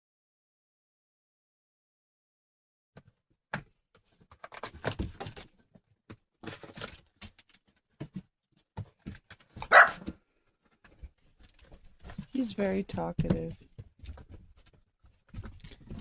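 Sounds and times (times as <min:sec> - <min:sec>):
puppy yelping: 0:09.6 - 0:10.1.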